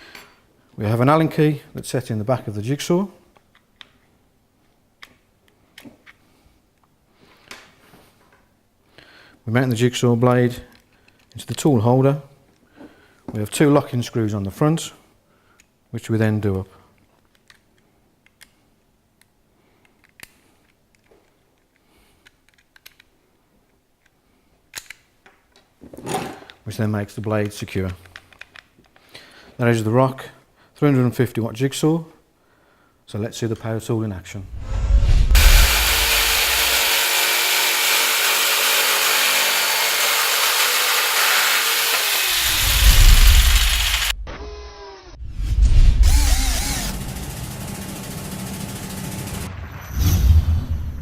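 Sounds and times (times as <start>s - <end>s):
electric jigsaw sawing: 35.4s - 45.2s, 46.0s - 49.5s.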